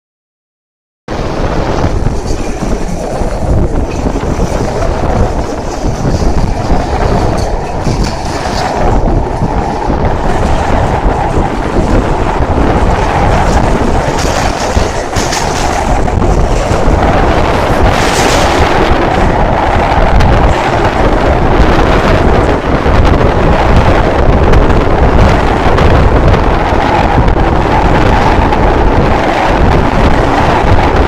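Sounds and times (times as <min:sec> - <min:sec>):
train wheels rumbling and clacking: 0:01.1 - 0:31.0.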